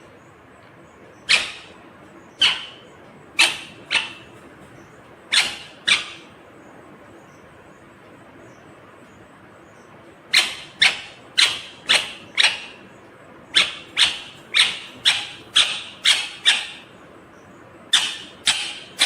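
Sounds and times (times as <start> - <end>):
parakeet calling: 1.0 - 7.6, 9.7 - 19.0.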